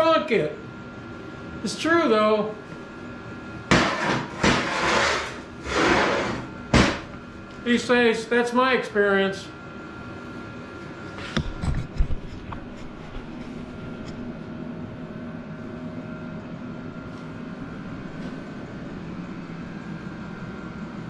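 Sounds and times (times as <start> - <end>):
steady mechanical hum: 0.0 - 21.0
sharp knocks: 3.7 - 4.7, 6.7 - 7.1.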